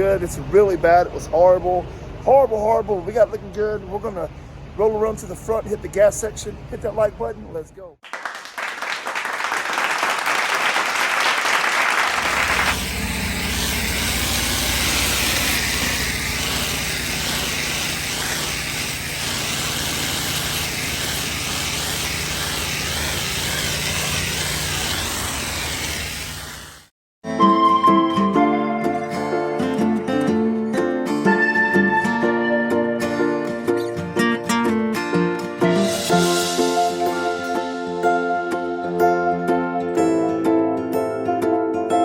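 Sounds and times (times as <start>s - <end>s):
high-pressure water spray hissing: 12.2s - 26.9s
pressure washer engine hum: 12.2s - 26.9s.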